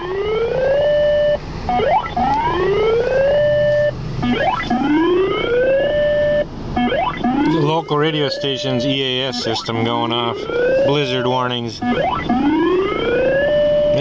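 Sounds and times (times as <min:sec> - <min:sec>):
rising siren-like alert tone: 0:00.0 - 0:14.0
short beep: 0:06.3 - 0:10.1.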